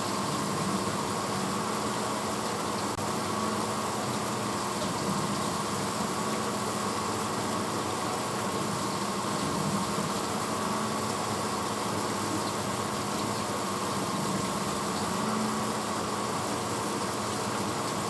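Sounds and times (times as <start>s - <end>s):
dishwasher running: 0.0s - 18.0s.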